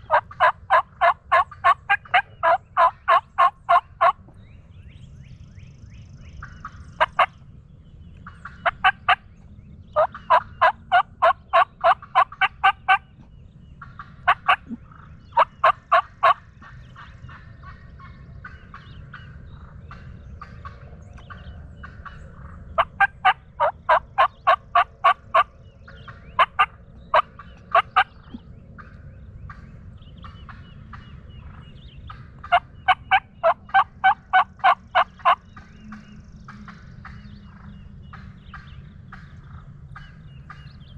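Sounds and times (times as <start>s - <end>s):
turkey yelping: 0.0s - 4.2s, 8.6s - 9.2s, 10.0s - 13.0s, 14.3s - 14.8s, 15.4s - 16.4s, 22.8s - 25.5s, 26.4s - 28.4s, 32.4s - 35.4s.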